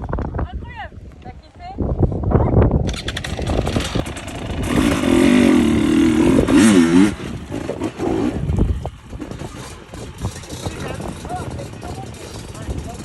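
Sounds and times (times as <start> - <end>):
motorcycle engine revving: 2.8 - 13.0.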